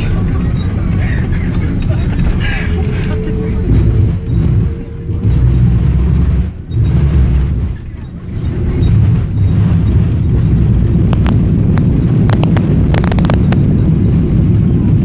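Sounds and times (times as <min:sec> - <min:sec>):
airliner landing rumble: 0:00.0 - 0:15.0
sharp clicks: 0:11.1 - 0:13.6.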